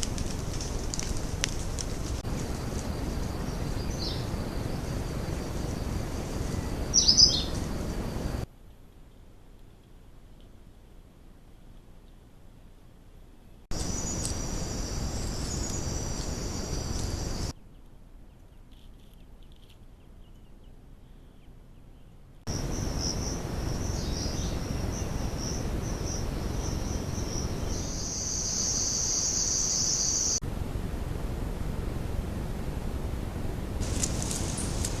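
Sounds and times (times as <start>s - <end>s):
insects chirping: 0.0s - 8.5s, 13.7s - 17.6s, 22.5s - 35.0s
steady hiss: 0.0s - 8.6s, 13.7s - 17.6s, 22.5s - 35.0s.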